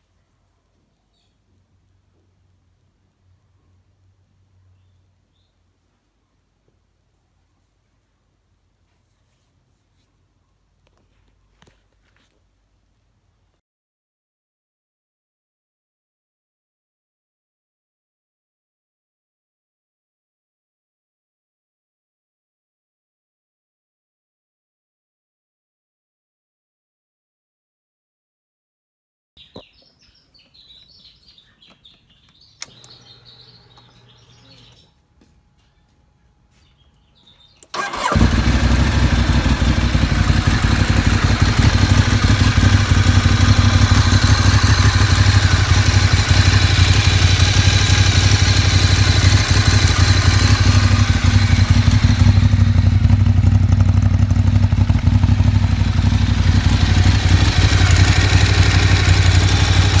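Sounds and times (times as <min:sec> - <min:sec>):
faint low hum: 0:00.0 - 0:13.6
motorcycle engine starting and idling: 0:32.4 - 0:34.9, 0:37.4 - 1:00.0.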